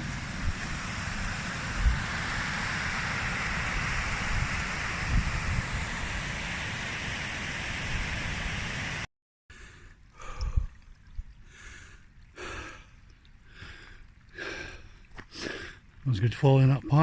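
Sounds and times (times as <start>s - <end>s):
steady rushing noise: 0.0s - 9.1s
heavy breathing: 11.5s - 15.9s.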